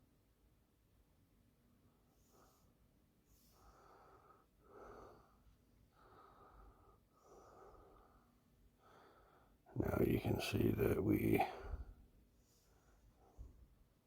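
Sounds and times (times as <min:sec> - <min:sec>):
faint slow breaths: 0:01.8 - 0:09.7, 0:11.3 - 0:14.0.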